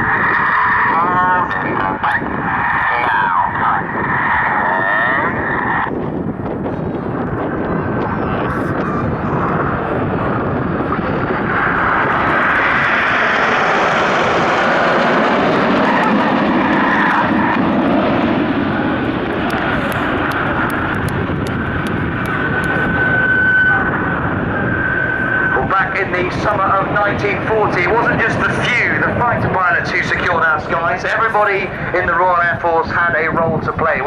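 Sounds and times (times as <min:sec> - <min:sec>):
jets flying past: 0:07.1 - 0:33.0.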